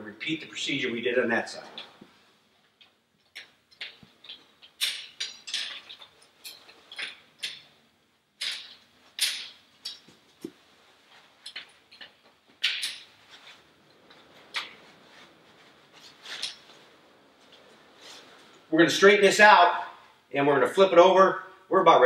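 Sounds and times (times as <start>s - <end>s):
canvas rustling and scraping: 9.9s - 18.7s.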